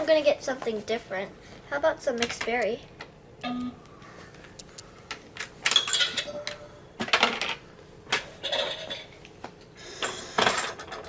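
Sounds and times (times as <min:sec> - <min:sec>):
items clattering out: 0:10.0 - 0:11.0.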